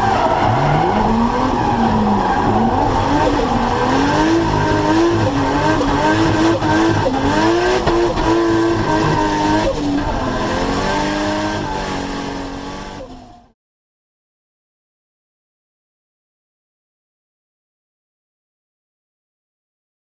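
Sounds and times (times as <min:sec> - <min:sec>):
car engine at high revs: 0:00.0 - 0:13.6.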